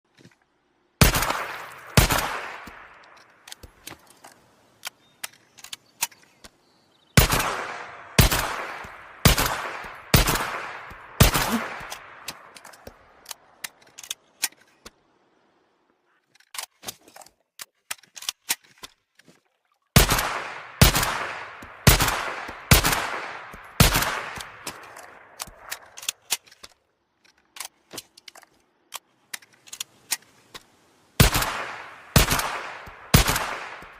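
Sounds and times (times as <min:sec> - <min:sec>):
rifle shots with echo: 0:01.0 - 0:03.0, 0:07.2 - 0:13.6, 0:20.0 - 0:26.1, 0:31.2 - 0:33.9.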